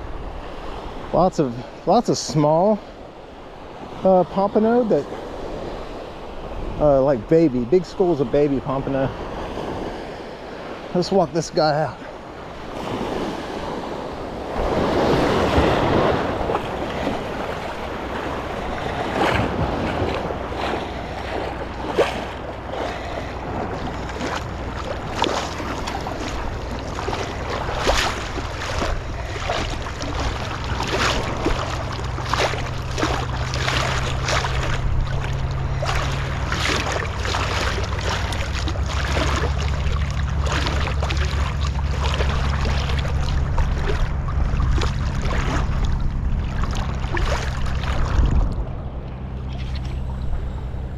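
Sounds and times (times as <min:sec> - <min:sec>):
surf washing in: 0:00.0 - 0:50.9
wind buffeting microphone: 0:11.6 - 0:50.9
splashes from wading: 0:12.0 - 0:50.9.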